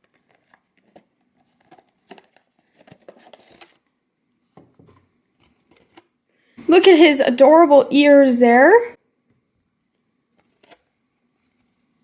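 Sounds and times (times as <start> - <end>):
plastic packaging crinkling: 0.0 - 4.0, 10.4 - 11.8.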